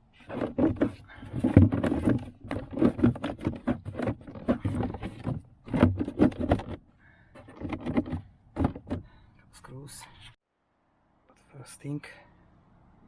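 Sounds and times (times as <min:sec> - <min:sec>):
plastic parts knocking: 0:00.3 - 0:09.1.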